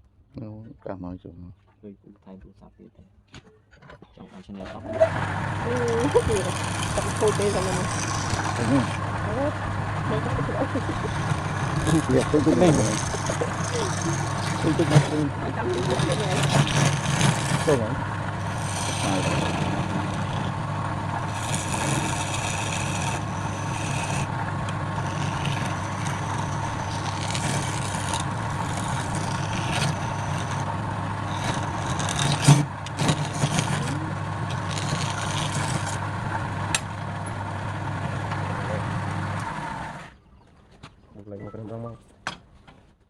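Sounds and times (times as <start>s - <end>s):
turning tool cutting wood: 4.5s - 40.1s
wood lathe humming: 4.8s - 40.1s.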